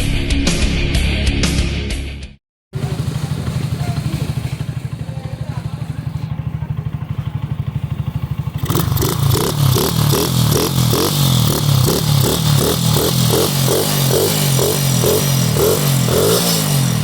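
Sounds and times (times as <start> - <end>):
motorcycle engine idling: 2.7 - 17.0
engine revving with pulsing beat: 2.8 - 17.0.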